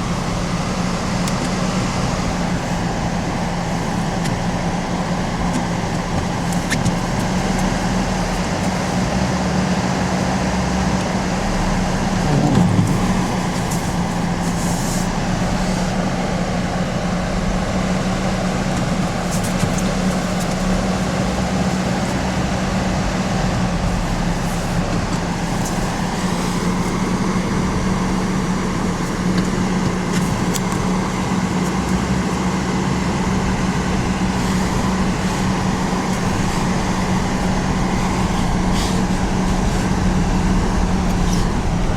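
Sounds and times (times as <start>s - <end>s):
rushing noise: 21.1s - 41.9s.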